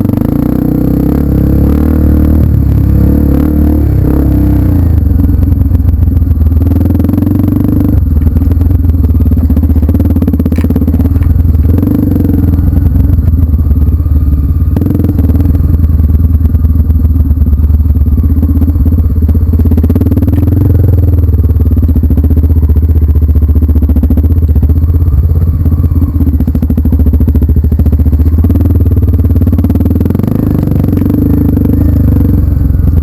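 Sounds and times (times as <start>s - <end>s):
vehicle engine running: 0.0s - 33.0s.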